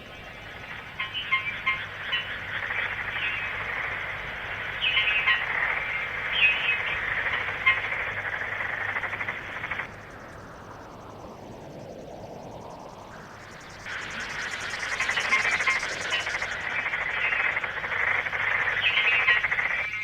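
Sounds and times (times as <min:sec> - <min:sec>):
chirping animal calls: 0:00.9 - 0:09.9, 0:13.9 - 0:20.0.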